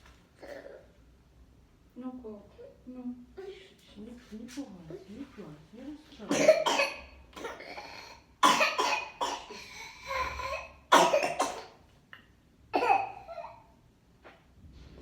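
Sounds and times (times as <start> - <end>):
child coughing harshly: 0.4 - 0.9, 6.3 - 11.8, 12.7 - 13.7.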